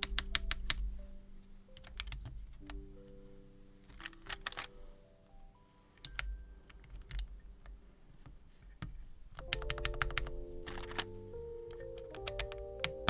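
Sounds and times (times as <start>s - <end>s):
mechanical keyboard keys clicking: 0.0s - 3.2s, 3.8s - 4.9s, 6.0s - 13.0s
background music: 0.0s - 8.0s, 9.2s - 13.0s.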